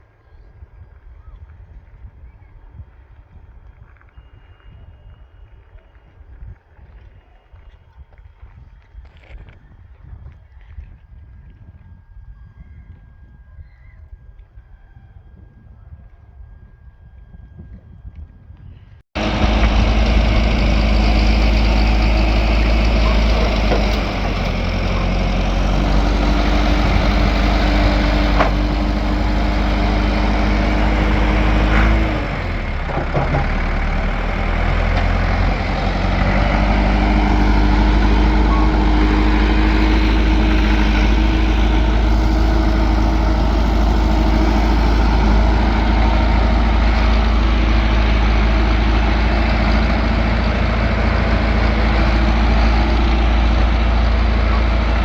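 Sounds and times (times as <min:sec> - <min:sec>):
engine rumbling: 0:18.8 - 0:55.0.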